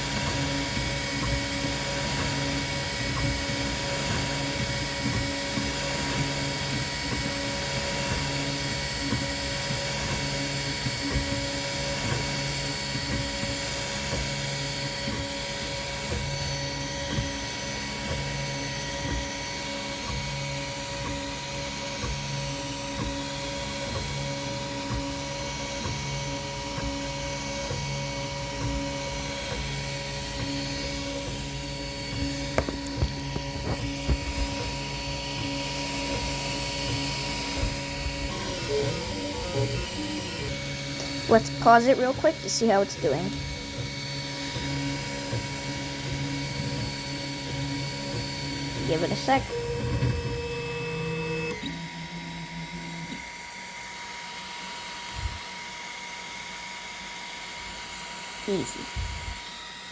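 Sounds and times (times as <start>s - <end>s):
high electronic whine and hiss: 0.0s - 53.6s
printer stepper motors humming: 0.0s - 59.9s.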